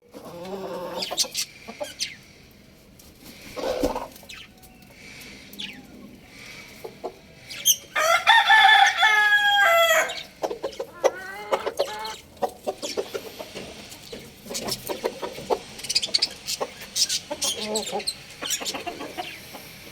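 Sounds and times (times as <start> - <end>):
chickens clucking: 0.0 - 19.9
rooster crowing: 7.9 - 10.3.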